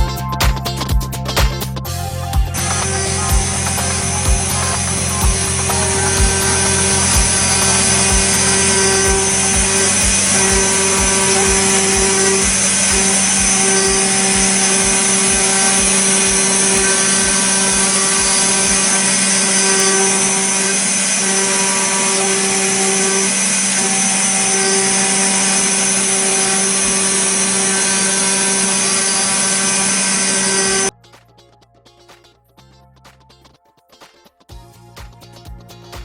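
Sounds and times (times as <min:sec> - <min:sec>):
milling spindle whine and cutting: 0:02.5 - 0:30.9.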